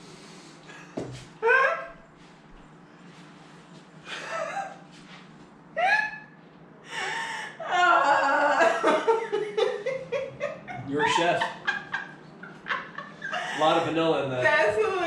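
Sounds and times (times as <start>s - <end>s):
people laughing: 7.7s - 14.1s
people exclaiming: 10.7s - 11.8s.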